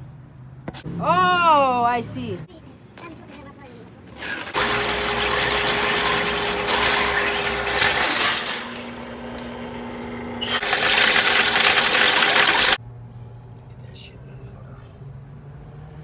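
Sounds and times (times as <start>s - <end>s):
spinning cable clattering: 4.0s - 12.8s
drain cleaning machine running: 4.1s - 12.8s.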